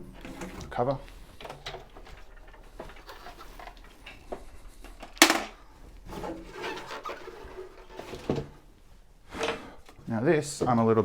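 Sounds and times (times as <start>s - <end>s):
plastic cover rubbing and rustling: 0.0s - 8.8s
plastic cover clacking: 1.4s - 5.6s.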